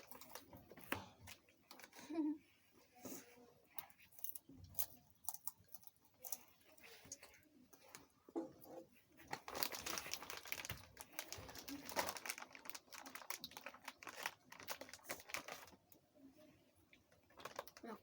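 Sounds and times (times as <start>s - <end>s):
plastic wrapper crinkling: 9.2s - 16.0s, 17.1s - 18.0s.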